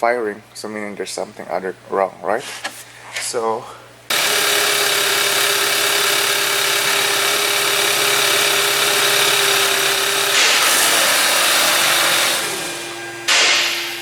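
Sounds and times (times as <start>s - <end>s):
car engine fast idle: 4.1s - 12.9s.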